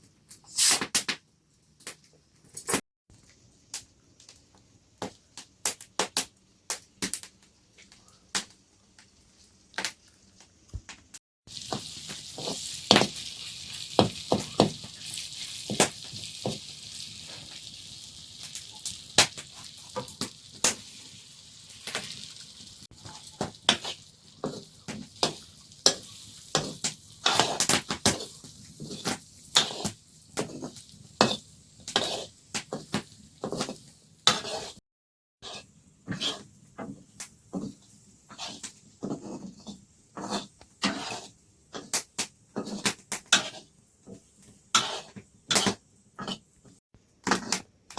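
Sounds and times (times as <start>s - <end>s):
food sizzling in a pan: 11.5s - 34.8s, 35.4s - 45.8s.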